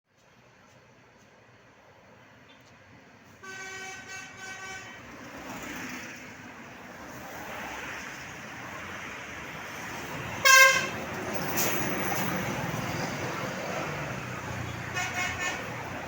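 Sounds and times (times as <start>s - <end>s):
road traffic noise: 0.1s - 16.0s
bus horn toots: 3.4s - 5.1s, 10.4s - 11.0s, 14.7s - 15.9s.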